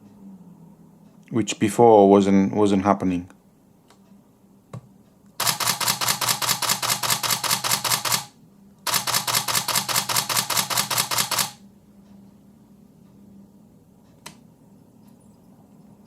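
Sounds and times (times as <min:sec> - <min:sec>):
camera shutter burst: 0:05.4 - 0:11.6.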